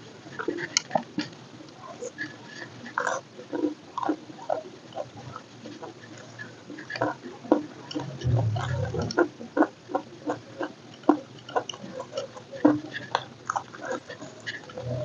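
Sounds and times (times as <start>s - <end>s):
low rumble: 8.2s - 9.2s.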